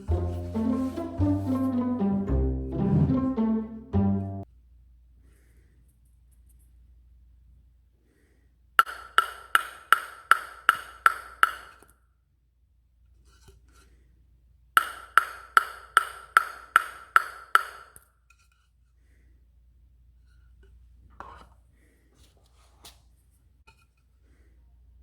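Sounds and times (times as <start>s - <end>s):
table tennis ball bouncing on racket: 8.8s - 11.8s, 14.8s - 18.0s.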